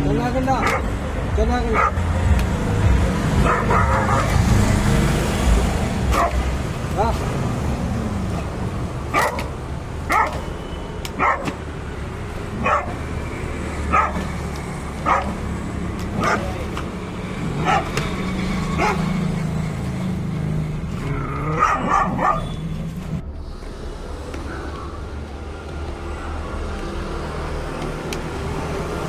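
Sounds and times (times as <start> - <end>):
dog barking: 0.6 - 0.9, 1.7 - 2.2, 3.3 - 4.6, 6.1 - 6.7, 9.1 - 11.7, 12.5 - 13.1, 13.8 - 15.5, 16.1 - 16.7, 17.5 - 19.4, 21.4 - 22.7.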